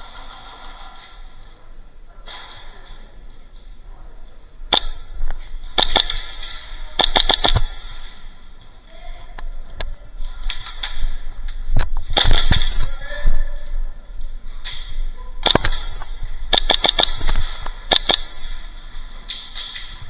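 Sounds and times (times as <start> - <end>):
airsoft guns firing: 4.7 - 8.2, 12.0 - 12.9, 15.4 - 18.7.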